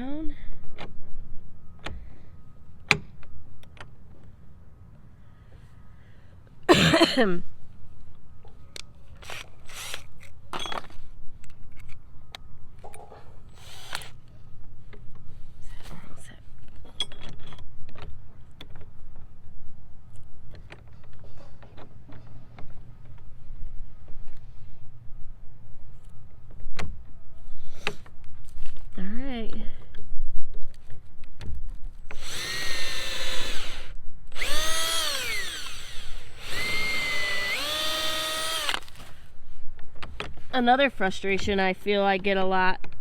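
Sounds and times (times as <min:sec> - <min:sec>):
metal hardware clicking and knocking: 0:16.8 - 0:18.1.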